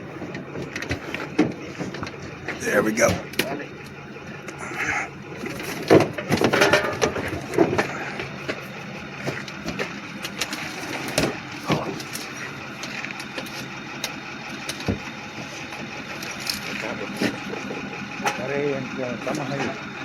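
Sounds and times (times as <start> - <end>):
heavy thuds and scraping: 4.9 - 13.6.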